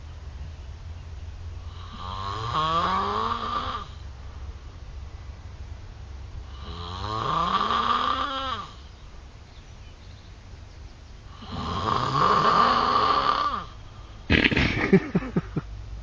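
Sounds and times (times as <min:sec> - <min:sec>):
man snoring: 0:01.7 - 0:04.0, 0:06.5 - 0:08.8, 0:11.3 - 0:13.7.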